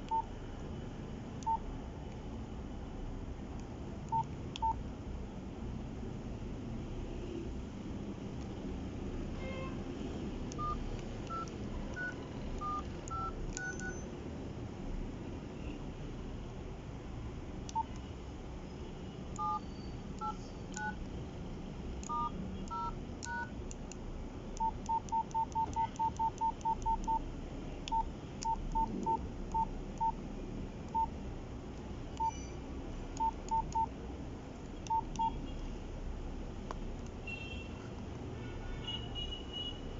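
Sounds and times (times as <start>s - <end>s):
phone keypad beeps: 0.0s - 0.3s, 1.4s - 1.6s, 4.1s - 4.8s, 10.5s - 14.1s, 17.7s - 18.0s, 19.4s - 19.6s, 20.2s - 21.0s, 22.0s - 23.6s, 24.6s - 27.2s, 27.9s - 30.2s, 30.9s - 31.1s, 32.2s - 32.6s, 33.2s - 33.9s, 34.8s - 35.4s.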